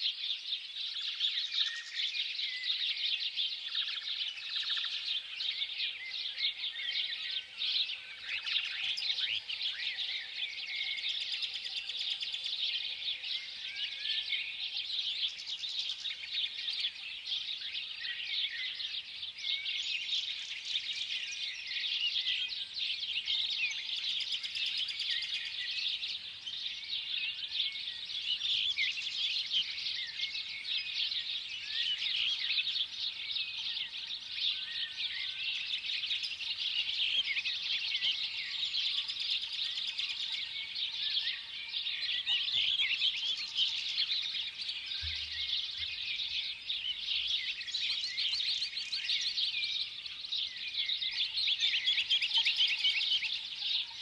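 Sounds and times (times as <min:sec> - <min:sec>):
small birds chirping: 0:00.0 - 0:54.0.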